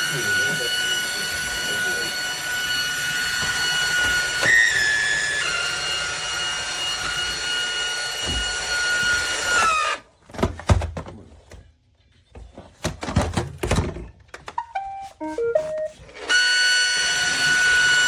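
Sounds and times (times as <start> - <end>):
robot vacuum motor whine: 0.0 - 10.0, 16.1 - 18.0
short electronic beeps: 14.6 - 15.9.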